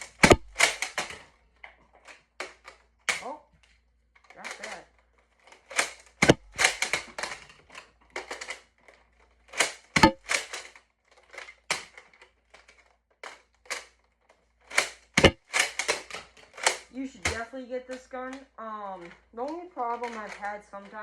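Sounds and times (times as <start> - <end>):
toy blaster being pumped and fired: 0.0 - 1.3, 4.4 - 8.7, 9.4 - 12.0, 14.6 - 18.3
sharp plastic knocks: 0.0 - 3.7, 4.3 - 14.0, 14.6 - 21.0.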